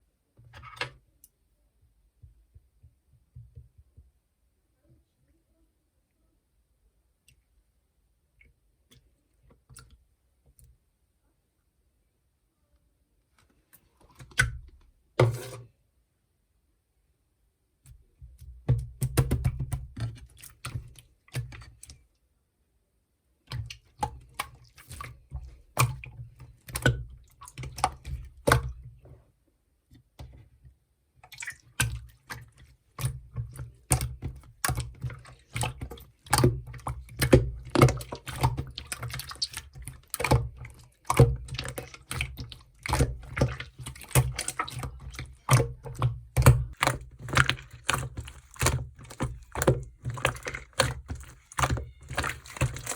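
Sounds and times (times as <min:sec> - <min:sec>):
slime squished by hand: 0:31.3 - 0:52.9.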